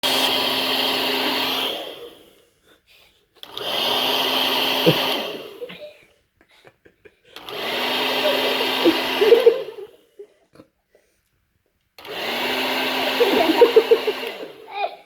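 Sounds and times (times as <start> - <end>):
hair dryer whirring: 0.0 - 2.4, 3.4 - 5.7, 7.4 - 10.0, 12.0 - 15.0.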